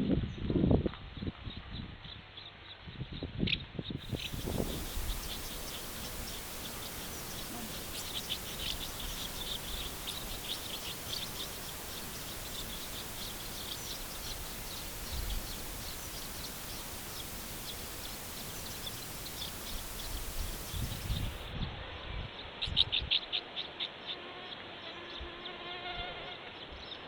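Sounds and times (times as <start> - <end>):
steady background hiss: 4.0 - 21.5
house martins twittering: 4.1 - 21.5.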